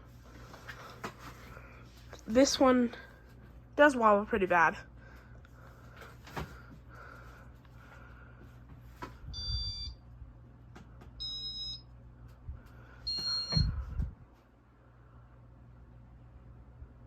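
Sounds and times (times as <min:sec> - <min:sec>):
ceiling fan humming: 0:00.0 - 0:17.0
short electronic beeps: 0:09.4 - 0:10.0, 0:11.2 - 0:11.8, 0:13.1 - 0:13.7.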